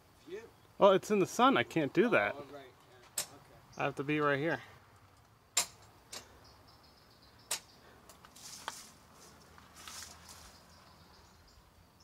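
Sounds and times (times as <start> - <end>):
sharp clicks or knocks: 5.2 - 6.3, 7.5 - 8.2
short scuffing hisses: 8.3 - 10.6.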